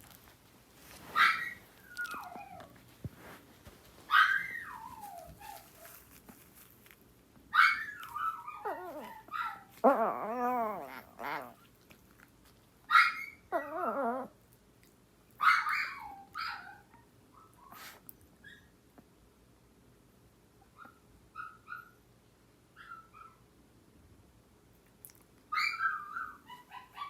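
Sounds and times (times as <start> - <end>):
small dogs yipping: 0.8 - 3.4, 4.0 - 6.4, 7.5 - 11.7, 12.9 - 14.4, 15.4 - 18.8, 20.6 - 22.0, 22.8 - 23.5, 25.5 - 27.0
dog howling: 7.6 - 11.6.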